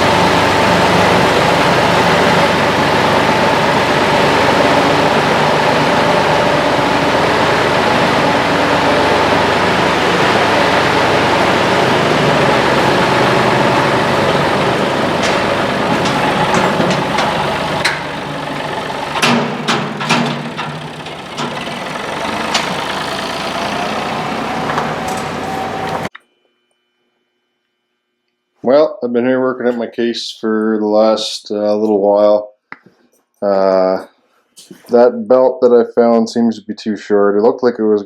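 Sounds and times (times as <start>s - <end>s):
engine running: 0.0s - 26.1s
sharp knocks and clanks: 9.4s - 26.2s.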